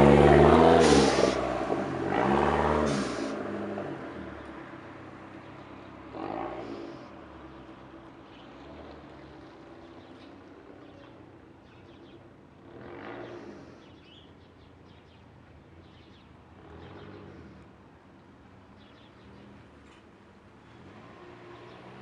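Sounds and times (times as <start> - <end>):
car engine running at low revs: 0.0 - 12.0.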